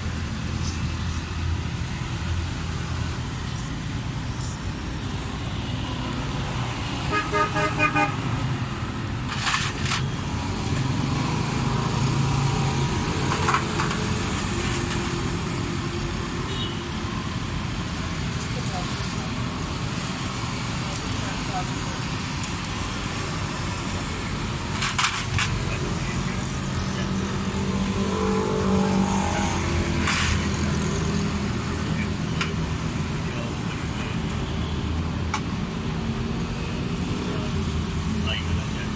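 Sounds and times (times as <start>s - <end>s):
street traffic: 0.0s - 38.9s
vehicle horn beeps: 16.5s - 16.8s.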